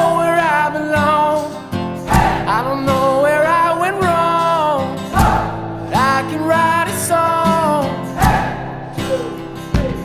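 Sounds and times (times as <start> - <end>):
person singing: 0.0 - 10.0
strummed acoustic guitar: 0.0 - 10.0.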